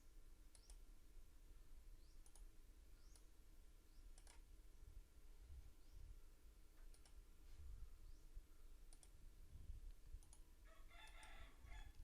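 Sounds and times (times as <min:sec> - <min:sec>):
faint computer mouse clicks: 0:00.5 - 0:00.8, 0:02.1 - 0:02.5, 0:04.1 - 0:04.5, 0:06.8 - 0:07.2, 0:08.9 - 0:09.2, 0:09.9 - 0:12.0.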